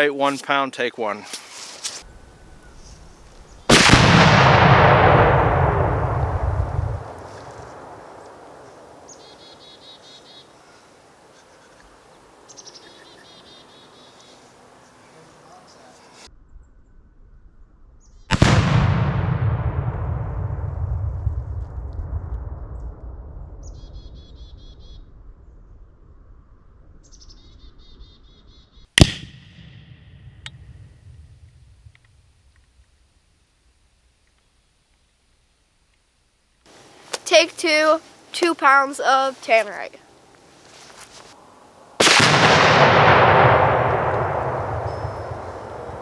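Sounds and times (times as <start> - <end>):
faint outdoor background hiss: 0.0 - 18.2, 30.3 - 46.0
faint crack: 1.2 - 2.1, 6.6 - 9.4, 36.7 - 37.3, 40.3 - 41.4
explosion blast with rumbling tail: 3.1 - 9.1, 18.3 - 25.6, 42.0 - 46.0
songbird trilling: 9.1 - 16.2.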